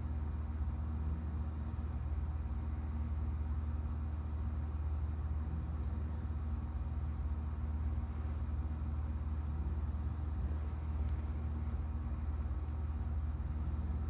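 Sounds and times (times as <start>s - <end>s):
steady low hum: 0.0s - 14.0s
faint breathing hiss: 0.6s - 2.4s, 5.2s - 14.0s.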